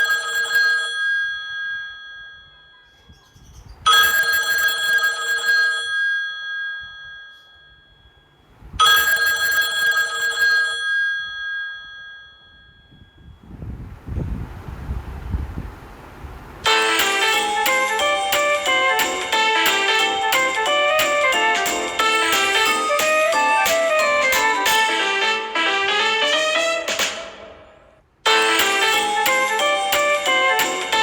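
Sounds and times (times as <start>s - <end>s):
trilling phone ringtone: 0.0s - 2.8s, 3.9s - 8.1s, 8.8s - 13.2s, 16.7s - 26.8s, 28.3s - 31.0s.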